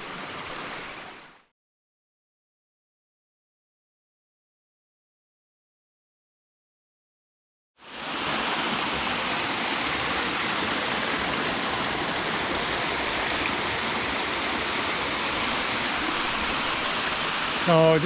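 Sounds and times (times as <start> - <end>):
waterfall rushing: 7.8 - 18.0.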